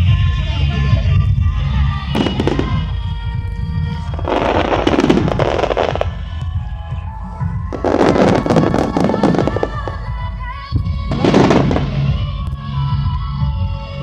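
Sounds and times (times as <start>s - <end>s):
low rumble of bursts: 0.0s - 14.0s
music through loudspeakers: 0.0s - 14.0s
fireworks crackling: 2.0s - 13.0s.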